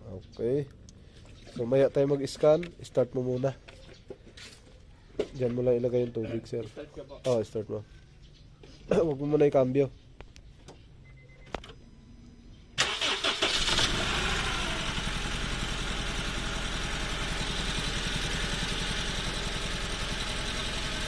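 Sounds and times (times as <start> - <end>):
car engine starting and misfiring: 12.8 - 21.0.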